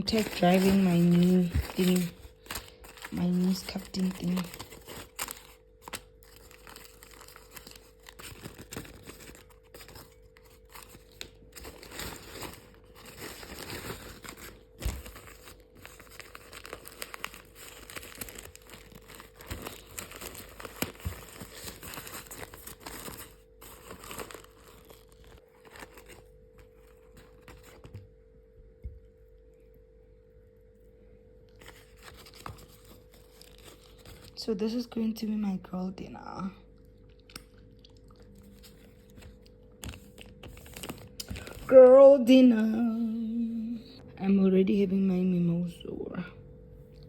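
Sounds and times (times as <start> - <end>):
plastic wrapping crinkling: 0.0 - 28.1, 31.5 - 34.9, 37.2 - 41.8
faint steady hum: 0.0 - 47.0.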